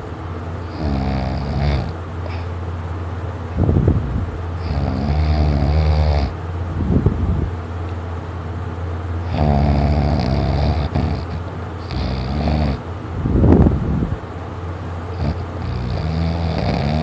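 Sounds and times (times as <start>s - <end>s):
heavy snoring: 0.6s - 2.5s, 4.6s - 6.4s, 9.2s - 12.8s, 15.1s - 17.0s.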